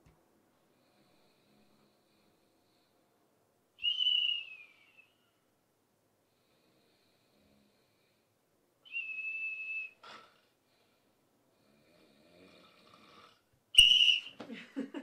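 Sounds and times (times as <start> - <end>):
high whistle note: 3.8 - 5.0, 13.8 - 14.4
faint breathy whistling: 3.8 - 5.5, 8.8 - 10.4, 13.8 - 14.4
breathy puff: 10.0 - 10.4.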